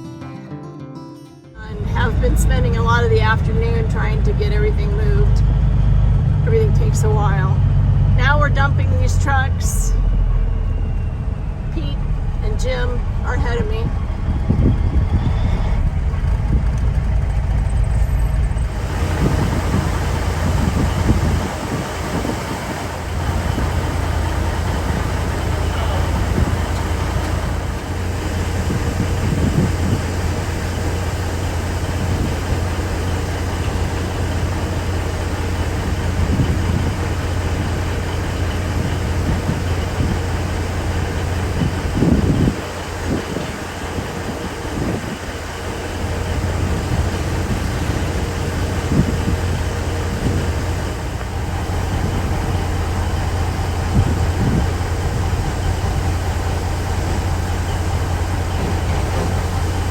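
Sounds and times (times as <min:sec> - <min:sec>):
road noise: 0:01.6 - 0:59.9
truck engine drone: 0:01.6 - 0:59.9
vehicle bumps: 0:46.5 - 0:59.9.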